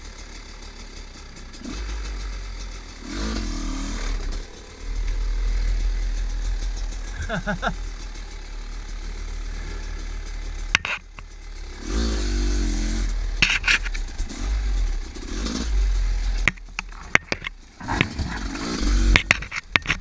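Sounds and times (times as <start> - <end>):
dirt bike engine revving: 1.4 - 20.0
sharp knocks and clatter: 9.6 - 11.4, 13.3 - 20.0.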